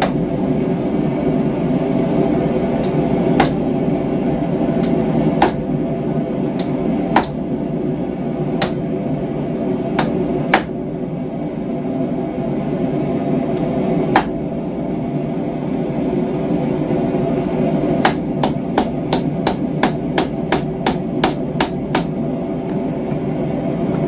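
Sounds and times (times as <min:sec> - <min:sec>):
forge burner rushing: 0:00.0 - 0:24.0
hammer ringing on steel anvil: 0:02.8 - 0:03.8, 0:04.8 - 0:05.8, 0:06.6 - 0:07.6, 0:08.6 - 0:09.0, 0:14.2 - 0:14.4, 0:18.0 - 0:22.1.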